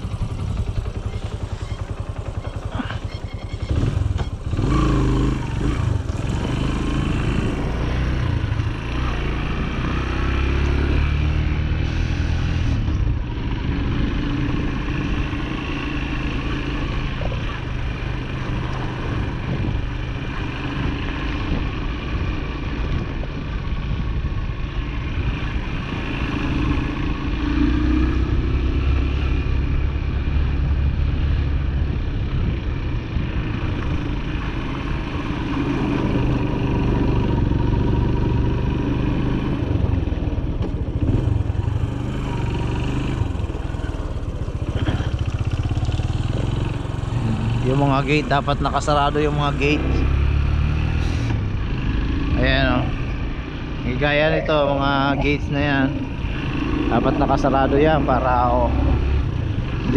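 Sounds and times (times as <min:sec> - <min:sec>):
small engine speeding up and slowing: 0:49.4 - 0:52.5.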